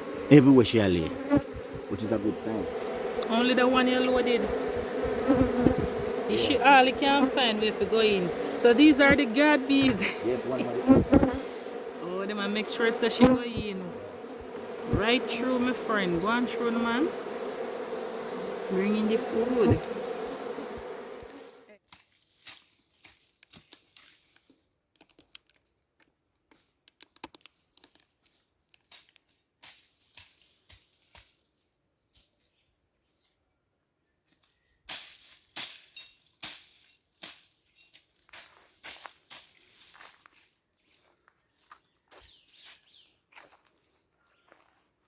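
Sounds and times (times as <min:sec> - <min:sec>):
honeybees buzzing: 0:00.0 - 0:21.7.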